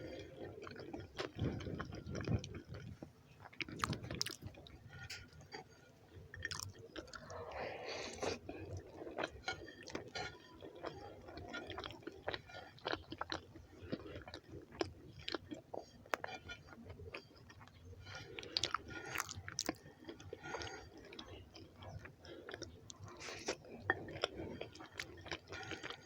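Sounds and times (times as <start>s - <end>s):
chewing with wet mouth clicks: 0.1s - 4.8s, 6.3s - 7.5s, 8.2s - 26.0s.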